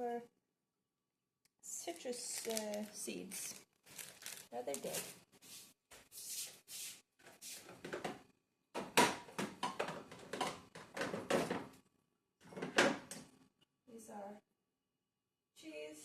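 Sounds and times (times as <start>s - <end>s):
food packaging rustling and knocking: 2.2s - 5.2s, 7.3s - 11.8s.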